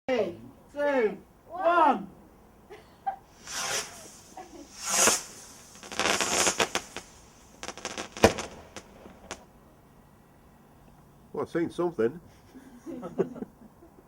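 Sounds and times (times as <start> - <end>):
fireworks hissing and crackling: 3.2 - 9.6
loud firework bang: 3.4 - 9.5
sharp pops and cracks: 4.9 - 9.5.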